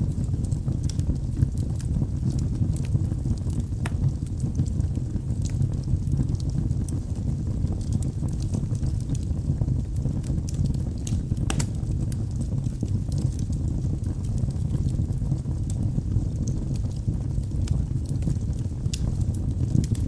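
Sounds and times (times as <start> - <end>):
burning logs crackling and popping: 0.0 - 20.0
fire flames rumbling: 0.0 - 20.0.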